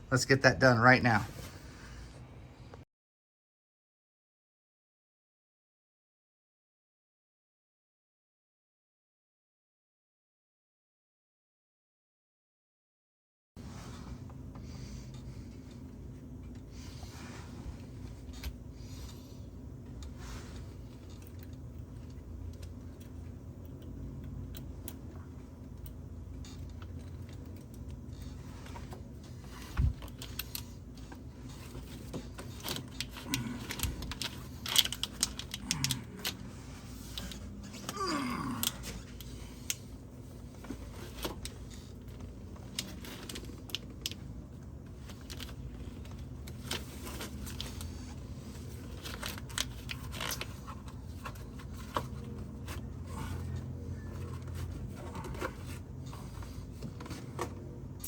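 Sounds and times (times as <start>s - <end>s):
steady low hum: 13.6s - 58.0s
metal and plastic clicks and scrapes: 17.8s - 38.0s, 38.6s - 57.8s.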